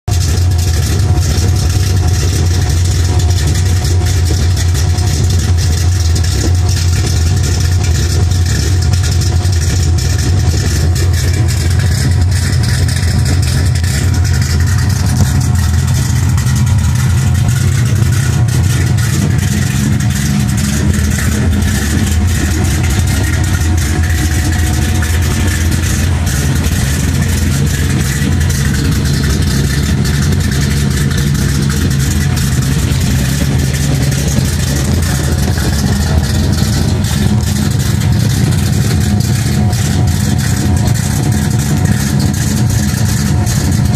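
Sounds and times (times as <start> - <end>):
car engine idling: 0.0 - 43.9.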